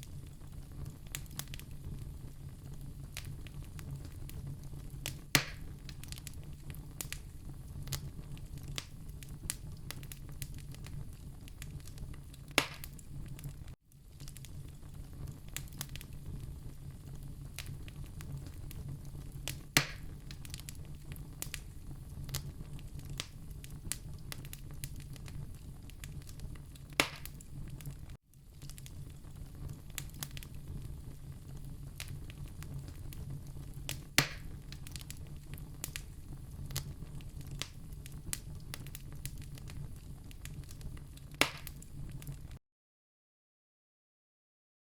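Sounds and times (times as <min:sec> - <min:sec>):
low rumble of fire: 0:00.0 - 0:42.6
wood fire crackling: 0:00.0 - 0:42.6
loud sharp pops: 0:05.4 - 0:05.7, 0:12.5 - 0:13.0, 0:19.8 - 0:20.1, 0:27.0 - 0:27.4, 0:34.2 - 0:34.5, 0:41.4 - 0:41.8.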